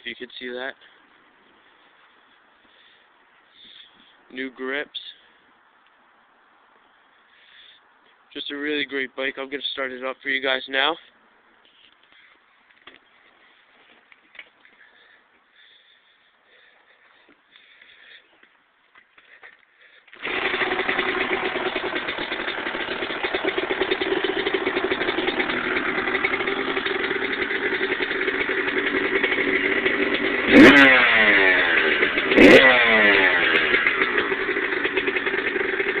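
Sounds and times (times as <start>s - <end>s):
dirt bike engine revving: 20.2s - 36.0s.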